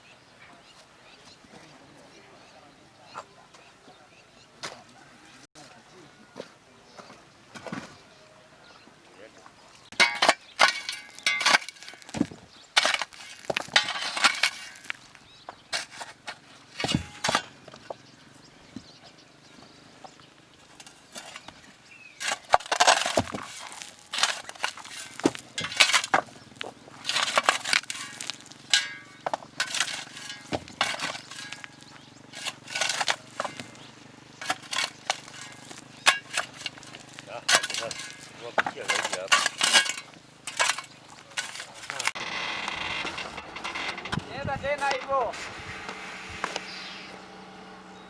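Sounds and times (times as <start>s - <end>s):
stones and hand tools clattering: 9.8s - 47.2s.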